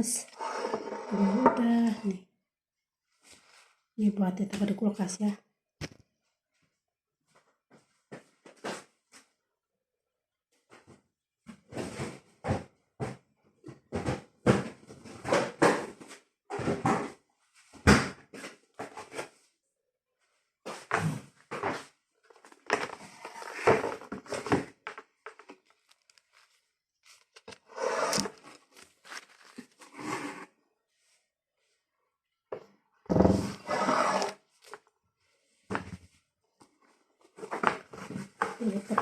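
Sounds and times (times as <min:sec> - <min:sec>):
food wrapping rustling: 0:22.2 - 0:27.6, 0:28.2 - 0:30.0.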